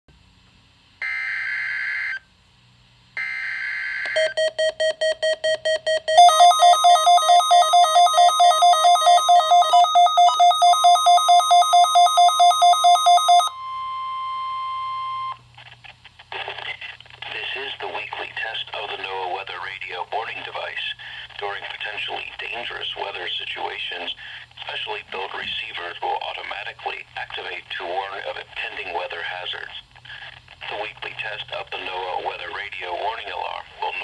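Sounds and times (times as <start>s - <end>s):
rapid alarm beeping: 3.2s - 15.4s.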